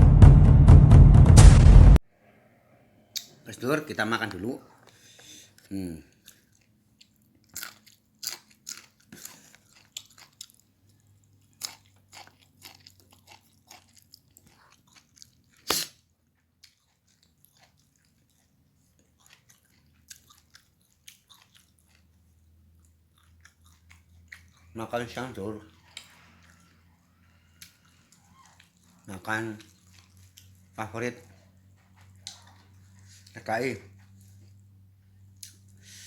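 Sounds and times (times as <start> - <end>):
person chewing crunchy food: 4.3 - 35.9.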